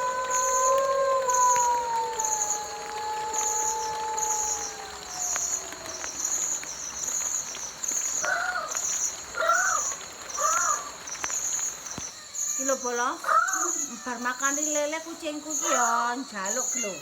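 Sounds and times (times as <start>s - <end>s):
dog howling: 0.0s - 6.7s
crickets chirping: 0.0s - 17.0s.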